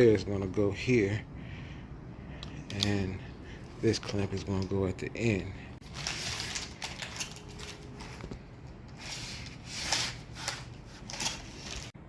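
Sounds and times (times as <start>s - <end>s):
rustling and scraping of metal parts: 5.8s - 12.0s.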